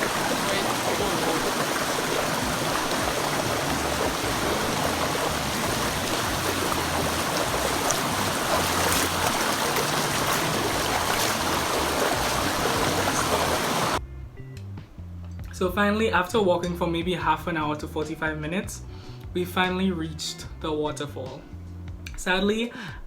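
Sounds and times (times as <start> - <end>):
river rushing: 0.0 - 14.0.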